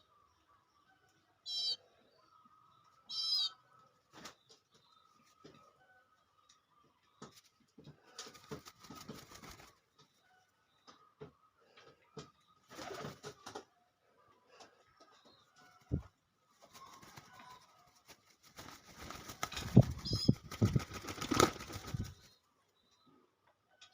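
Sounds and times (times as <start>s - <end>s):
pigeon wings flapping: 8.2s - 9.8s, 12.7s - 13.6s, 16.8s - 22.2s.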